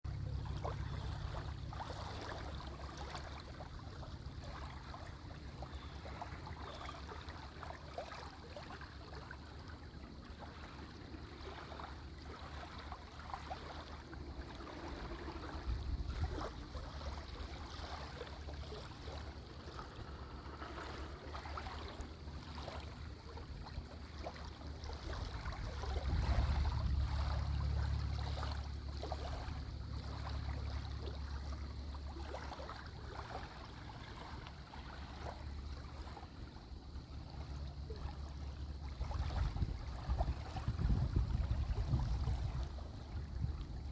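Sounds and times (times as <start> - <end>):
small waves lapping against shore: 0.1 - 43.9
low rumble: 19.2 - 22.4.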